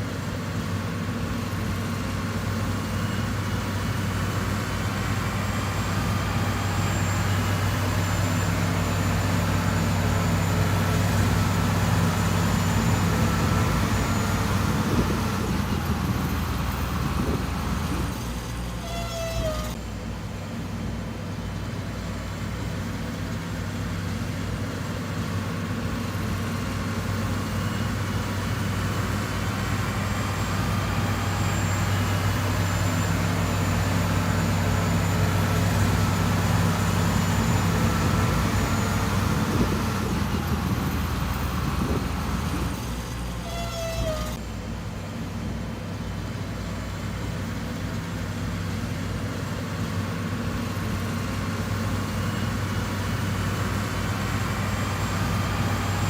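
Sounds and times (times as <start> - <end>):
heavy diesel engine running: 0.0 - 56.0
brief squeal: 4.6 - 19.9, 36.7 - 44.5.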